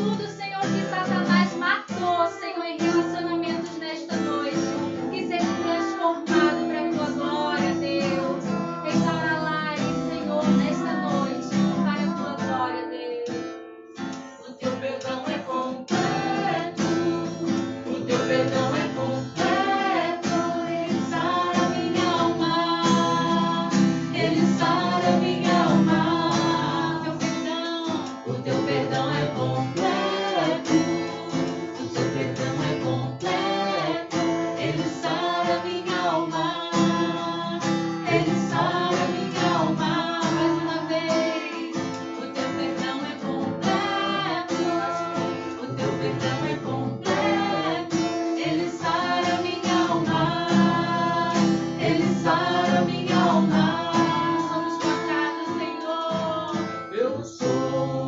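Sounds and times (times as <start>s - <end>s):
woman singing: 0.0s - 13.6s, 14.4s - 58.0s
strummed acoustic guitar: 0.0s - 58.0s.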